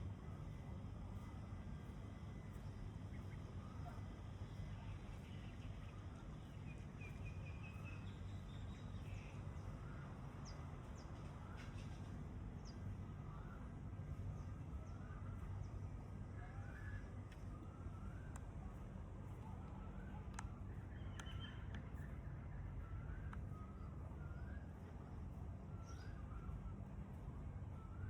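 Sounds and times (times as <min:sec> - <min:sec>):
low outdoor rumble: 0:00.0 - 0:28.0
birds chirping: 0:19.5 - 0:22.9.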